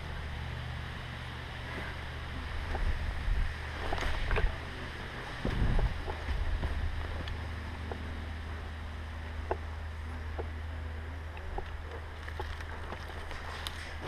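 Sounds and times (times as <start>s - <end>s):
low microphone rumble: 0.0s - 14.0s.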